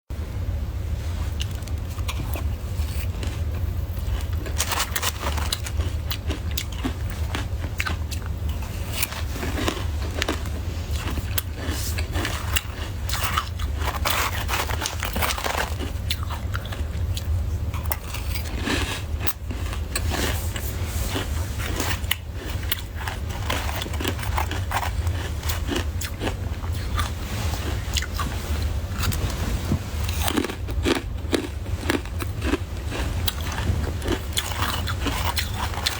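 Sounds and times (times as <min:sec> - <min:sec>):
low hum: 0:00.1 - 0:35.9
ice being chewed: 0:01.3 - 0:29.4, 0:30.0 - 0:35.9.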